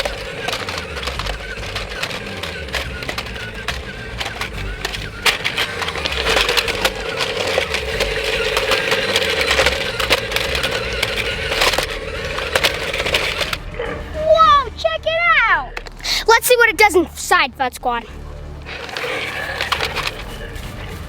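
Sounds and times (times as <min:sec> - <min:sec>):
sharp clicks: 0:00.0 - 0:13.7
toy truck motor whirring: 0:00.0 - 0:14.6, 0:18.6 - 0:21.0
wheels crunching over rocks: 0:00.0 - 0:16.4, 0:18.6 - 0:21.0.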